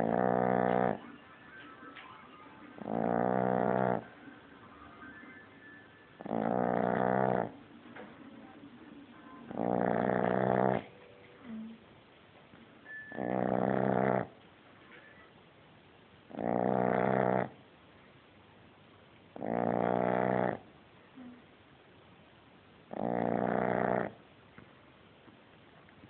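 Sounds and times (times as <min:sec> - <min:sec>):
dog snoring loudly: 0:00.0 - 0:01.0, 0:02.8 - 0:04.2, 0:06.2 - 0:07.6, 0:09.4 - 0:10.9, 0:13.1 - 0:14.4, 0:16.3 - 0:17.6, 0:19.4 - 0:20.7, 0:22.9 - 0:24.2.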